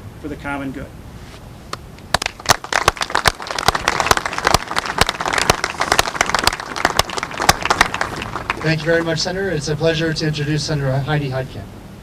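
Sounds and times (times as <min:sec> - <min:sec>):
audience applauding: 0:02.1 - 0:09.1.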